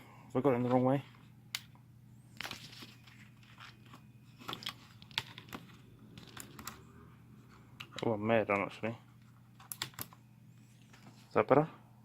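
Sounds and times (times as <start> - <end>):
plastic clicks and handling noises: 9.6 - 10.2.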